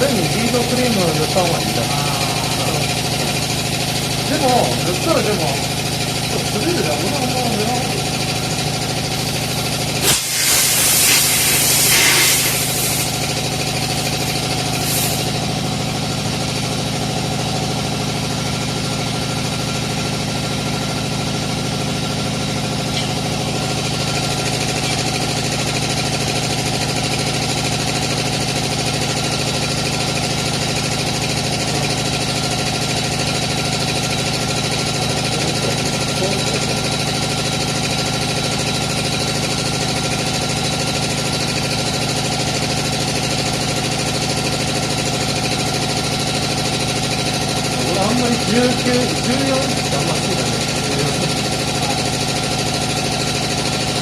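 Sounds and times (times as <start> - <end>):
machine hum: 0.0 - 18.6
compressed air hissing: 9.0 - 15.5.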